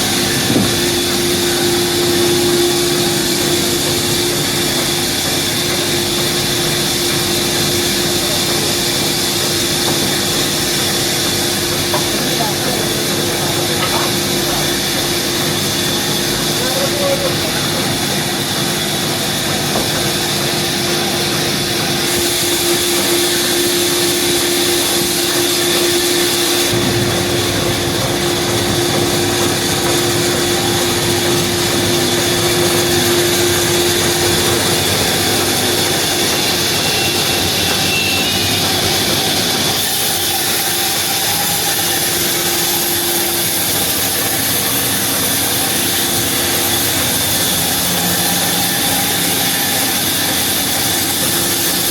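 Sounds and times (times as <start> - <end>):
sawmill machinery running: 0.0 - 51.9.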